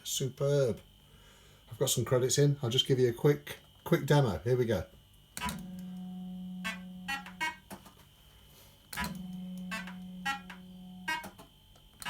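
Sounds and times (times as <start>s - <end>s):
fruit machine electronic tone: 5.4s - 7.7s, 9.0s - 11.4s
fruit machine reels clunking: 8.9s - 11.5s.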